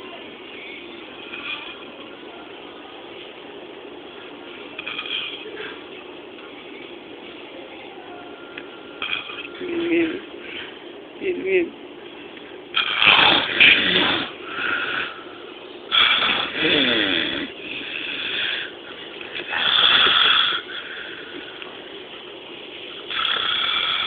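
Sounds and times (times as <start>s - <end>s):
man snoring loudly: 12.8s - 14.4s, 15.9s - 18.7s, 19.5s - 20.7s.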